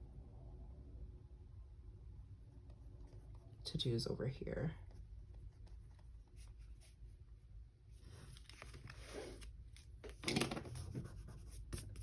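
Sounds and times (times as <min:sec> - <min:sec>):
pen scratching on paper: 0:10.4 - 0:12.0.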